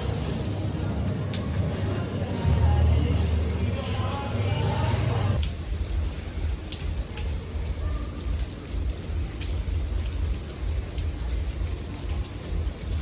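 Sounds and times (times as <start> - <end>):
raindrops ticking sharply: 5.4 - 13.0
steady rain falling: 5.4 - 13.0.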